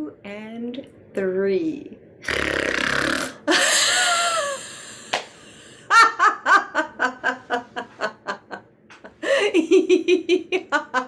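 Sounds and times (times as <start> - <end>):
person snoring: 2.3 - 3.6
person laughing: 3.4 - 5.2, 5.8 - 11.0.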